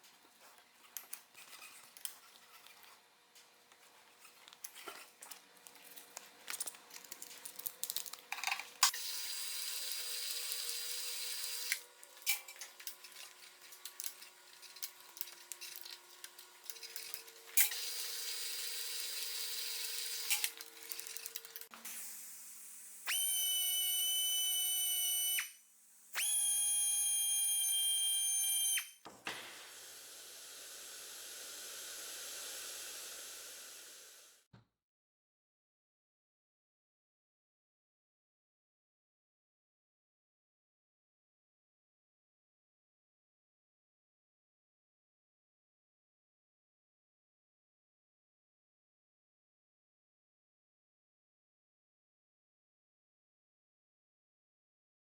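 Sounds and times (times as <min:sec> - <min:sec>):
welding arc hissing buzz: 0:29.4 - 0:34.4.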